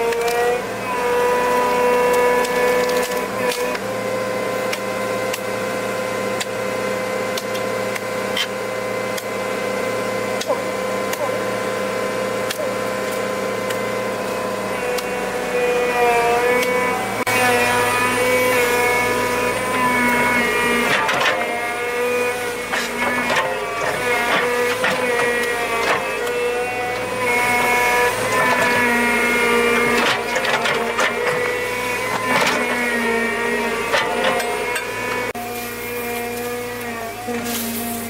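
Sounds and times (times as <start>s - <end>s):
motor whining: 9.2s - 38.0s.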